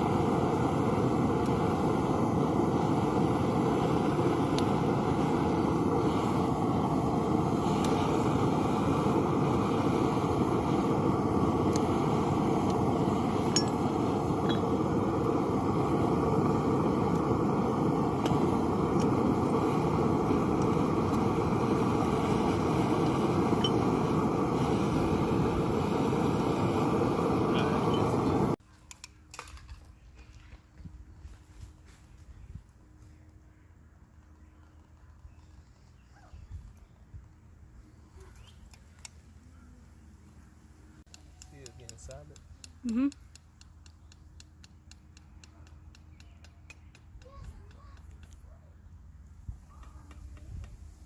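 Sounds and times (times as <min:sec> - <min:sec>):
propane burner rushing: 0:00.0 - 0:28.6, 0:41.0 - 0:43.1.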